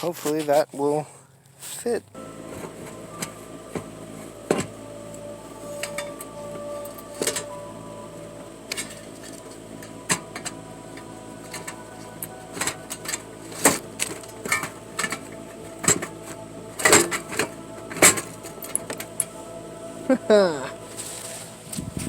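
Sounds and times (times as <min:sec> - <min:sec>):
steady hum: 0:02.1 - 0:22.0
sheet metal clanking and scraping: 0:11.4 - 0:19.4.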